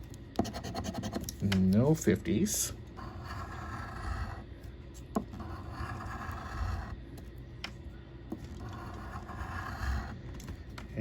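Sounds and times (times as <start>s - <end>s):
lottery ticket being scratched: 3.0s - 4.4s.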